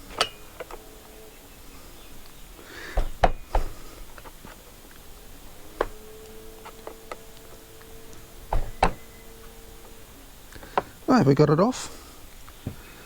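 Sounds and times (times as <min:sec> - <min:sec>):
sharp knocks and clicks of parts: 0:00.0 - 0:00.9, 0:02.2 - 0:11.1.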